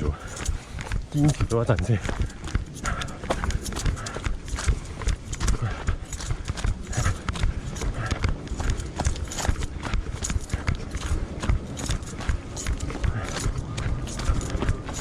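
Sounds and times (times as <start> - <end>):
running footsteps on dirt path: 0.0 - 15.0.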